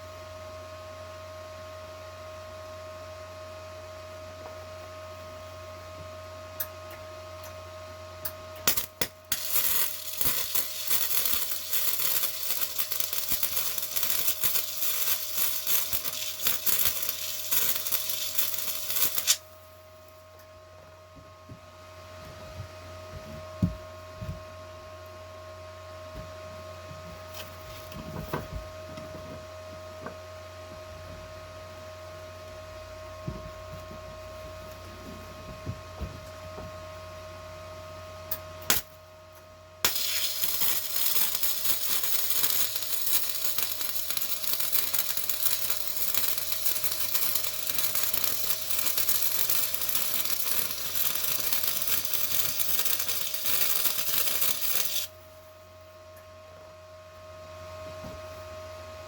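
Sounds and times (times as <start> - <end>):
welding arc crackling: 8.6 - 19.7, 38.7 - 38.9, 39.8 - 55.2
welder humming: 8.6 - 20.2, 38.6 - 38.9, 39.8 - 55.2.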